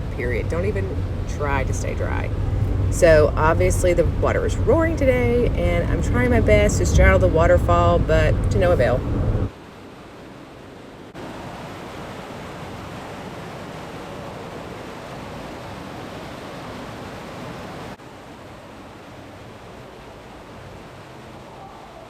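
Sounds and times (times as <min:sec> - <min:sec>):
waterfall roaring: 0:00.0 - 0:22.0.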